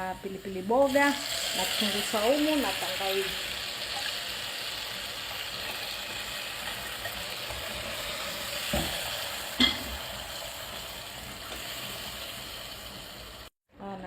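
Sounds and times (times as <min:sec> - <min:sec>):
paste sizzling in hot oil: 0:00.0 - 0:13.6
knocks on a pot: 0:08.7 - 0:09.0.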